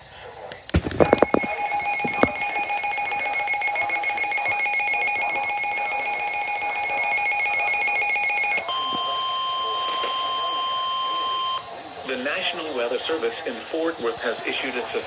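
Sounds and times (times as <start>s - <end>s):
sharp clicks: 0.5s - 1.5s
radio warning alarm tone: 0.7s - 11.6s.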